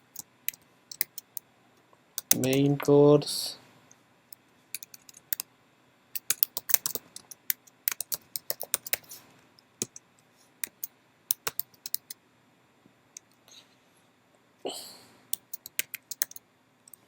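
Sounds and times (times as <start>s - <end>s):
computer keyboard typing: 0.1s - 1.4s, 2.2s - 2.6s, 4.8s - 5.4s, 6.2s - 9.1s, 10.6s - 12.2s, 15.4s - 17.0s.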